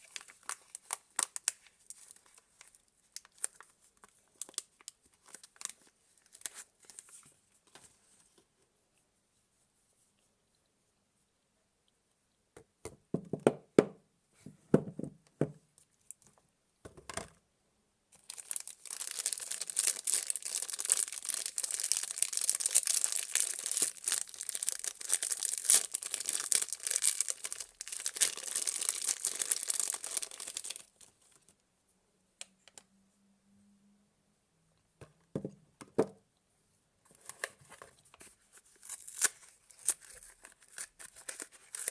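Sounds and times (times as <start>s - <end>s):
wrapping crinkling and tearing: 0.0s - 7.3s, 18.2s - 31.5s, 38.5s - 41.9s.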